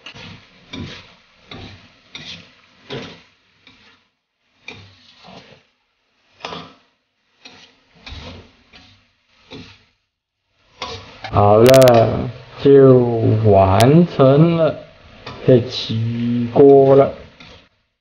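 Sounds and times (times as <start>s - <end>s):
spatula scraping a wok: 0.0s - 13.5s, 14.2s - 18.0s.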